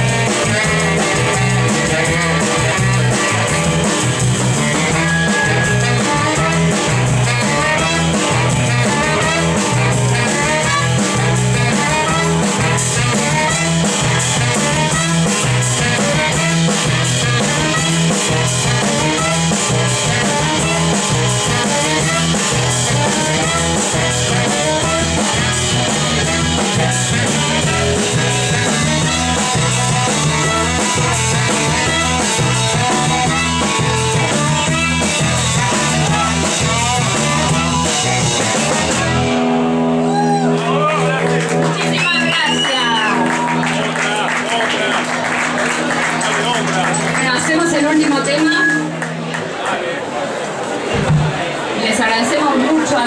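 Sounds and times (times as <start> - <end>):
drum kit beat: 0.0 - 40.6
electric guitar: 0.0 - 49.6.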